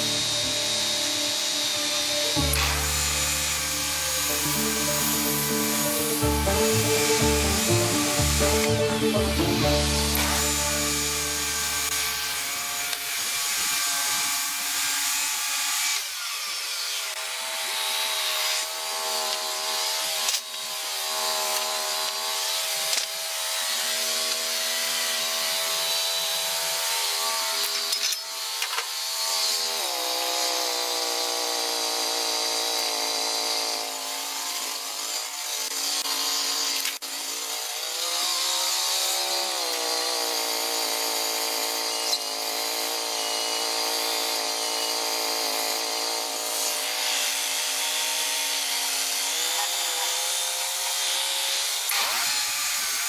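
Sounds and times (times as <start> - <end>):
sawmill engine running: 0.0 - 12.7
saw blade hissing through wood: 0.0 - 14.9.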